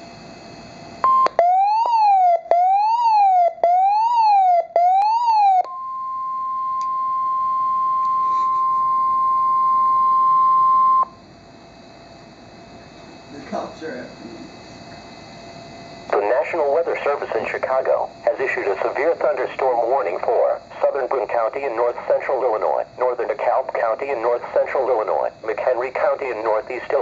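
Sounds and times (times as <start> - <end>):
steady warning alarm tone: 0.0 - 27.0
sweeping siren-like tone: 1.0 - 11.2
faint radio hiss: 16.1 - 27.0.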